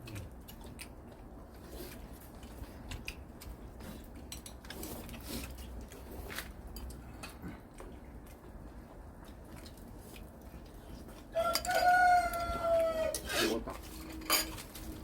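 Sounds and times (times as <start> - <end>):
chopsticks and dishes clattering: 13.1 - 15.0.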